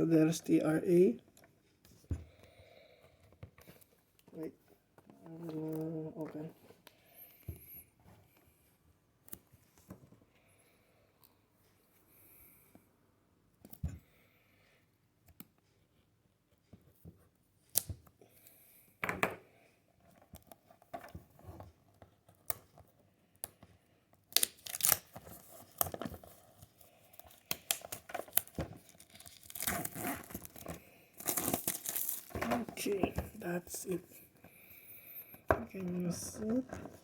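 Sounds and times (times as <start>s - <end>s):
plastic packaging tearing and crinkling: 24.3s - 32.9s.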